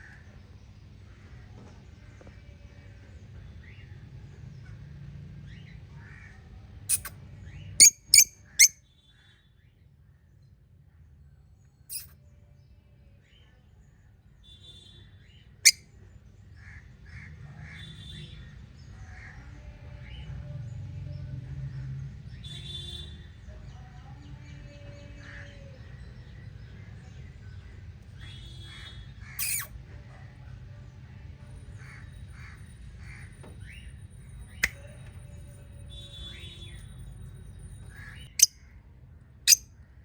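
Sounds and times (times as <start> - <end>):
budgerigars chirping: 7.8 - 8.7, 29.4 - 29.7.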